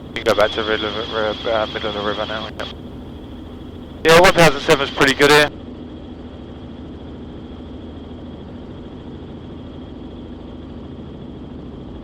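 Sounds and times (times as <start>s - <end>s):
faint high whine: 0.0s - 5.6s
helicopter engine and rotors droning: 0.0s - 12.0s.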